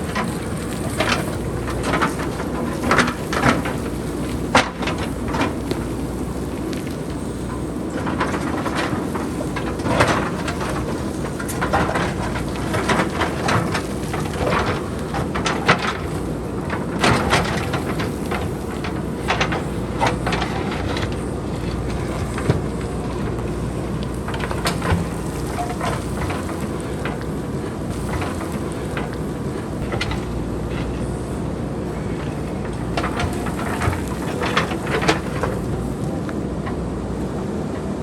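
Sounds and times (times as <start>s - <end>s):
rocks clattering down hillside: 0.0s - 36.5s
backhoe engine rumble: 0.0s - 38.0s.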